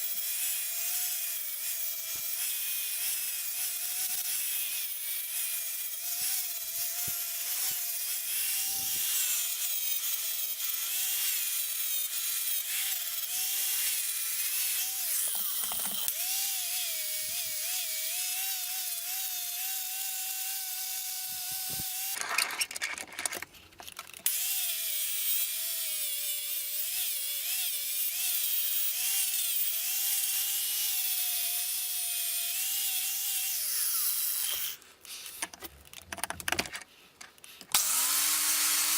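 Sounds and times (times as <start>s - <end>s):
power tool motor whine: 0.0s - 22.2s, 24.2s - 35.4s, 37.7s - 38.9s.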